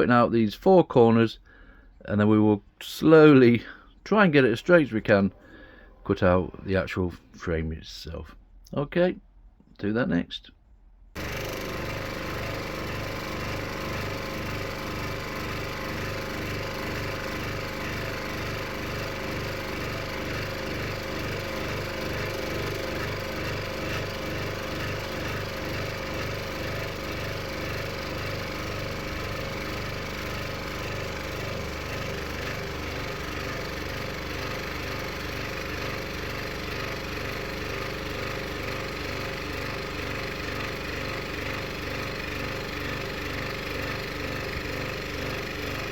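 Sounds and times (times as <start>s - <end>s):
scroll saw cutting plywood: 11.2s - 45.9s.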